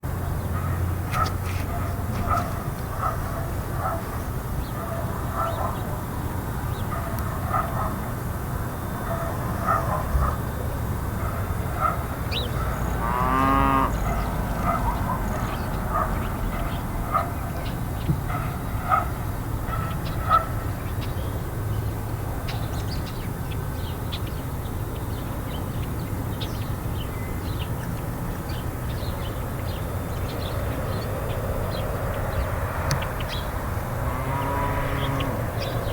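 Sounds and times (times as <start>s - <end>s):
low rumble of road traffic: 0.0s - 35.9s
drawn-out animal call: 9.0s - 20.7s, 29.9s - 35.9s
fowl honking: 11.2s - 17.4s
small birds chirping: 11.4s - 35.9s.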